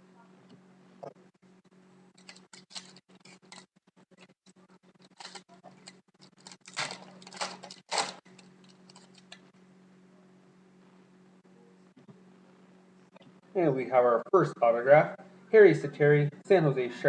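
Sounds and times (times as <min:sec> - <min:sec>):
cards rustling: 0:02.2 - 0:03.7, 0:05.0 - 0:09.4.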